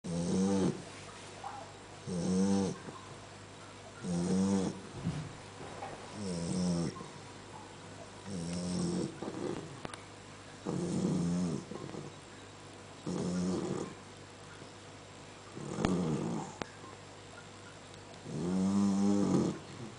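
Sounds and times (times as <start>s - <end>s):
puppy snoring: 0.1s - 0.9s, 2.0s - 3.0s, 4.0s - 5.4s, 6.1s - 7.1s, 8.2s - 9.9s, 10.6s - 12.2s, 13.0s - 14.0s, 15.5s - 16.7s, 18.2s - 19.9s.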